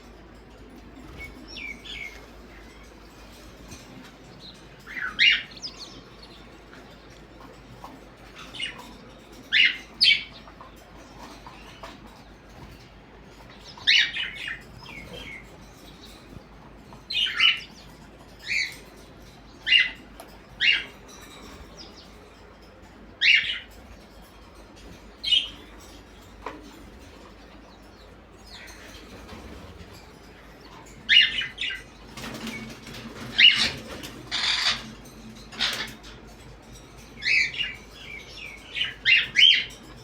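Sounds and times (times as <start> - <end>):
parrots screeching: 33.2 - 36.2.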